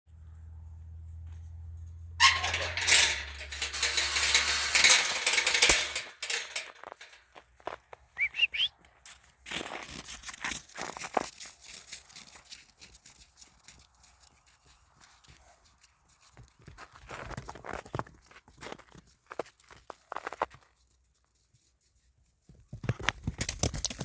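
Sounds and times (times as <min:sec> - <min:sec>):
short rising whistles: 0:08.2 - 0:08.7.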